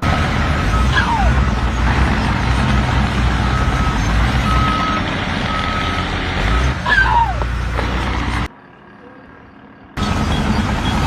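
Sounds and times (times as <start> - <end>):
diesel engine rumbling: 0.0 - 11.0
reversing alarm beeping: 2.6 - 6.8.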